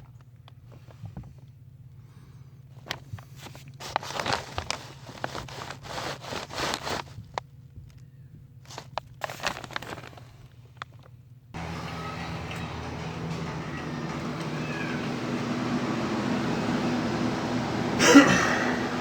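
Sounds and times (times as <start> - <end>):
steady low hum: 11.6 - 19.0.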